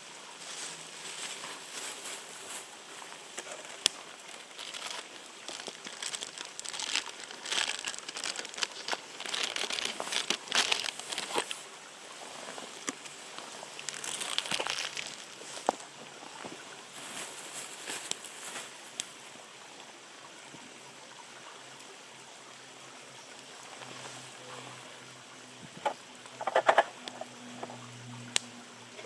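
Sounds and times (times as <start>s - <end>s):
crinkling and rustling: 0.4s - 11.6s, 12.2s - 19.0s, 25.8s - 27.8s.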